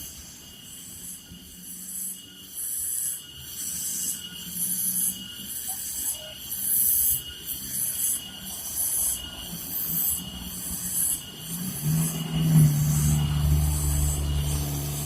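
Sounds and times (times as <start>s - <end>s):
pulsing high hiss: 0.0s - 15.0s.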